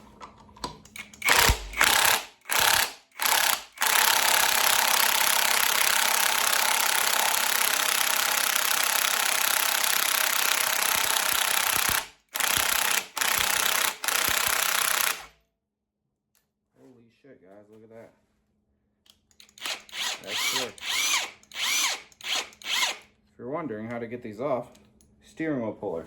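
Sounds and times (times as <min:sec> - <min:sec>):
impact wrench hammering: 0:01.0 - 0:15.3.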